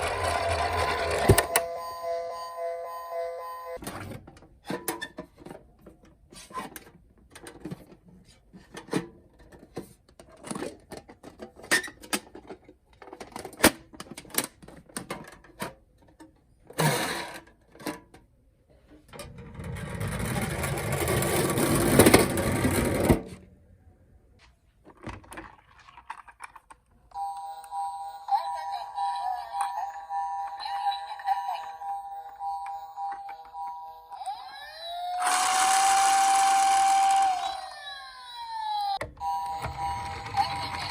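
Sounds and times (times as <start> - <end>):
plastic toy cars clicking: 4.8 - 18.3, 24.8 - 27.2
whirring noise: 35.1 - 37.8.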